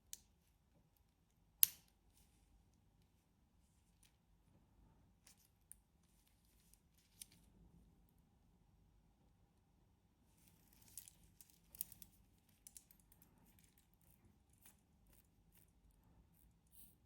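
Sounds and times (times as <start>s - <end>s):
wristwatch clicks and rustling: 6.2s - 7.5s, 10.4s - 15.8s.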